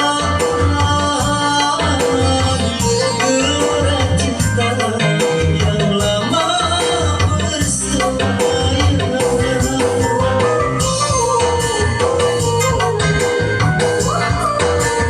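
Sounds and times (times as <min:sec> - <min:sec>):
pop song over sound system: 0:00.0 - 0:15.0.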